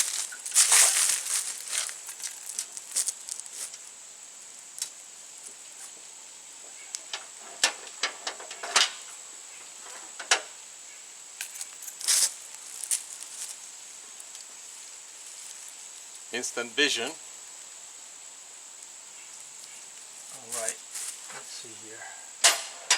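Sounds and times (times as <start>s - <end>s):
clicks of tools and metal parts: 22.4s - 22.9s.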